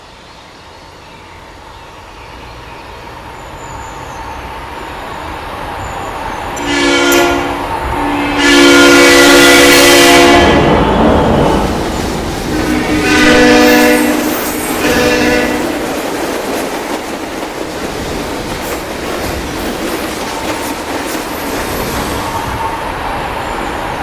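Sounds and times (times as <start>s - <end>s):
train rumble: 0.0s - 24.0s
locomotive horn chord: 6.6s - 11.1s, 12.5s - 15.9s.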